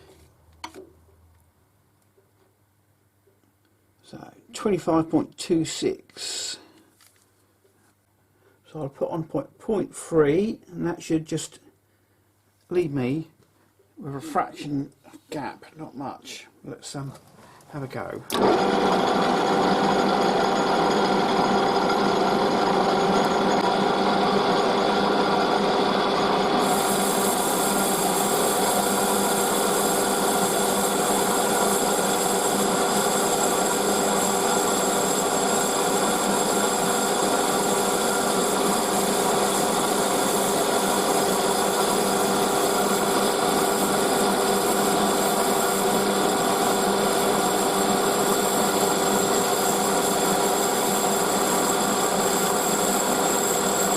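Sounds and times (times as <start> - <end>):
metal lathe cutting: 18.3 - 53.9.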